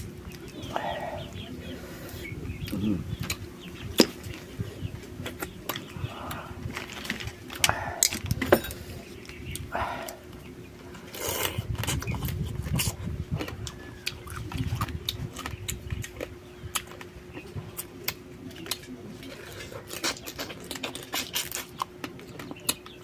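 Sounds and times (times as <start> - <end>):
faint steady hum: 0.0 - 23.0
wet chewing: 2.6 - 23.0
shells crunching and cracking: 19.5 - 23.0.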